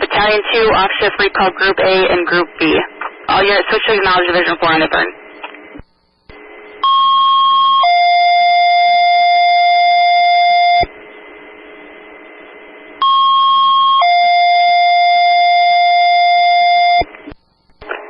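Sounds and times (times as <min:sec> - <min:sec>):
radio hiss: 0:00.0 - 0:06.8
two-tone radio paging alert: 0:13.0 - 0:17.1.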